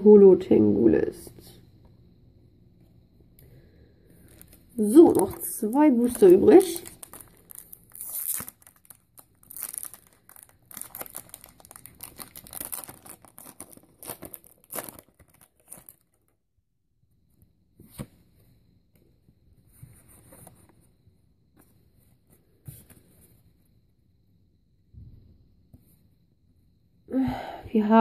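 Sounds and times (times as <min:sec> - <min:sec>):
faint handling of cards: 0:04.2 - 0:16.3
foil wrapper tearing and crinkling: 0:05.2 - 0:16.3.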